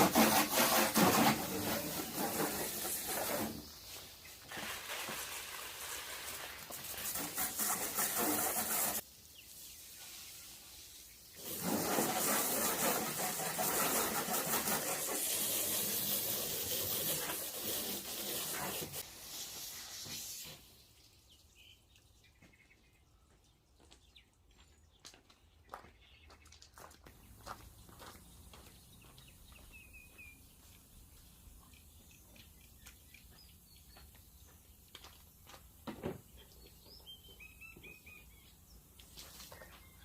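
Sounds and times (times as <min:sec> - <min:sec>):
running water hissing: 0:00.6 - 0:21.1.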